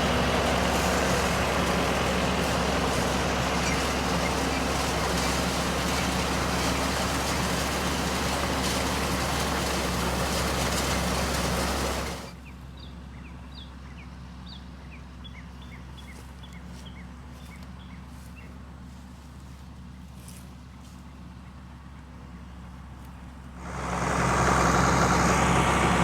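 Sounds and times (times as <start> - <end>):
tractor engine running: 0.0 - 13.2, 15.7 - 26.0
loud rushing noise: 23.6 - 26.0.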